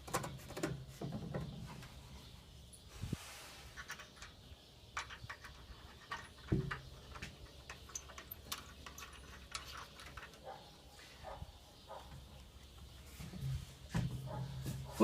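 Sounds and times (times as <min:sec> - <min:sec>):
bolt and nut clicking: 0:03.8 - 0:10.6
thump on wood: 0:13.9 - 0:14.8.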